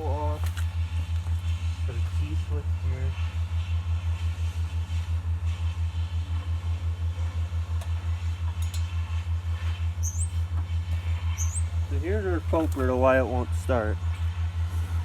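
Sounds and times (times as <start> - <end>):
pulsing machine hum: 0.0 - 15.0.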